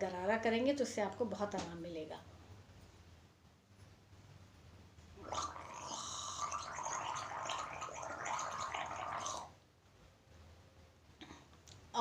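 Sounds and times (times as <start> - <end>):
woman gargling water: 5.2 - 9.5.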